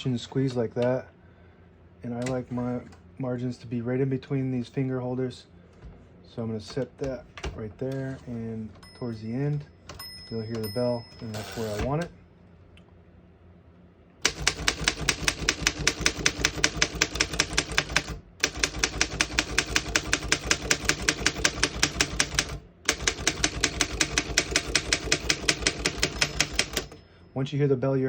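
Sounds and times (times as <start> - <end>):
manual typewriter key strikes: 14.3 - 27.0.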